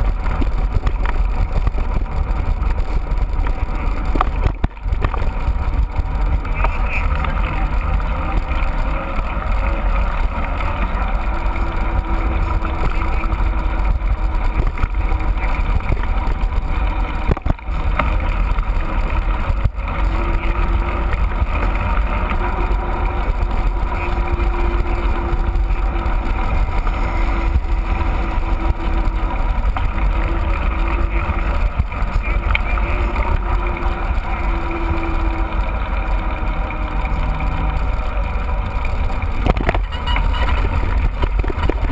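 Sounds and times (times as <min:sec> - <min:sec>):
wind rush on microphone: 0:00.0 - 0:36.9, 0:38.3 - 0:41.9
tyre and trail rumble: 0:00.0 - 0:41.9.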